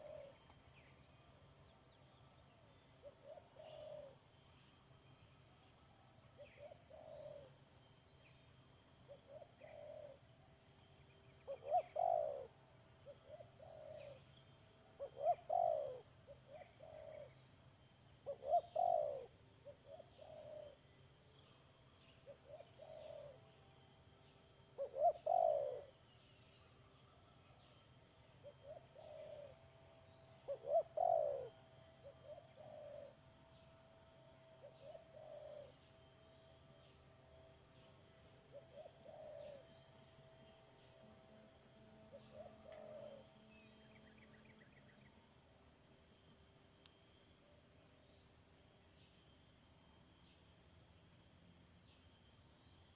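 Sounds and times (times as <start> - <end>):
doves cooing: 0.0 - 0.4, 6.6 - 7.5, 9.3 - 10.2, 11.5 - 12.5, 15.0 - 17.3, 18.3 - 20.8, 22.4 - 23.4, 24.8 - 25.9, 30.5 - 33.1, 38.5 - 39.6, 42.1 - 43.3
faint high hiss: 0.0 - 52.9.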